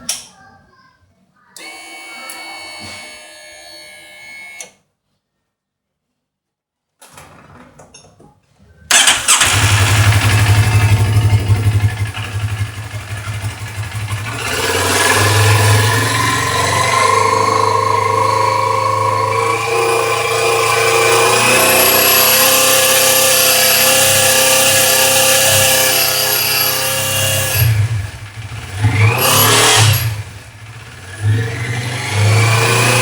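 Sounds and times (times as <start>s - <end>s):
motorcycle engine starting and revving: 8.9s - 33.0s.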